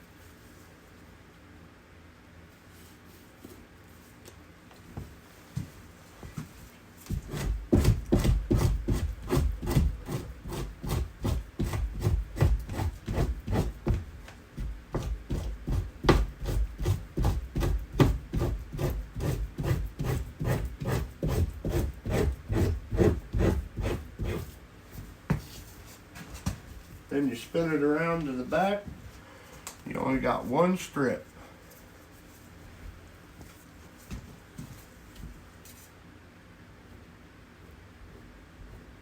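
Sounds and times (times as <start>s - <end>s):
blade scraping hide: 7.1s - 14.0s.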